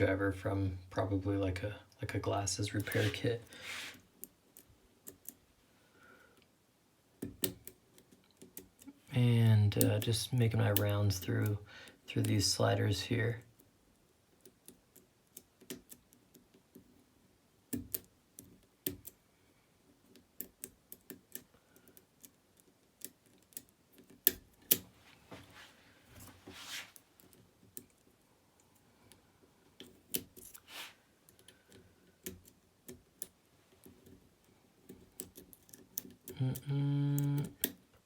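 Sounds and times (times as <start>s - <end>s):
metal tools scraping: 2.8s - 4.0s
lock picking tools clicking: 20.1s - 24.8s, 34.8s - 36.6s.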